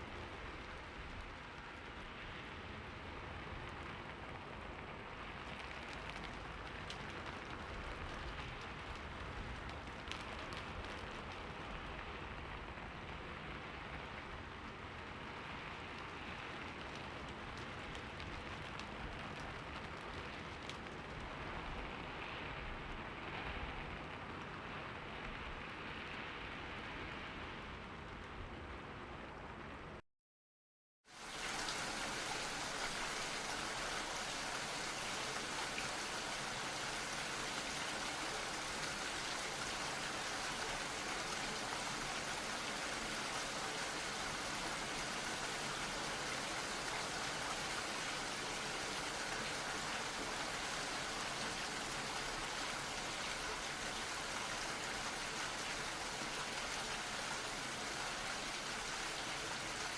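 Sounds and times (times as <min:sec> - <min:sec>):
steady rainfall: 0:00.0 - 0:30.0, 0:31.1 - 0:59.9
raindrop ticks: 0:03.6 - 0:21.9.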